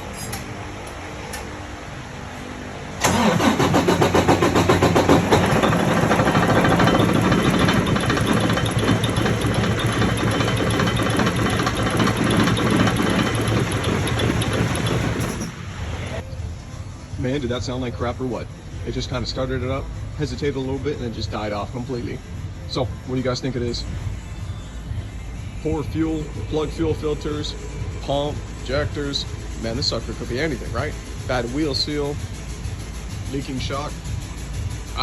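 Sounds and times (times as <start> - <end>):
diesel engine cranking and running rough: 3.0 - 15.6.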